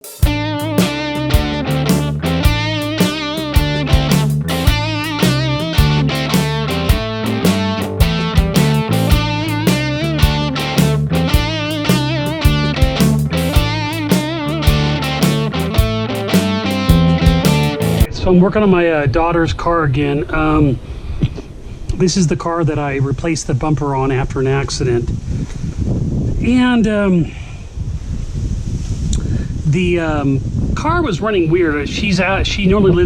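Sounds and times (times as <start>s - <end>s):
steady beat: 0.0s - 18.1s
electric guitar: 0.2s - 18.1s.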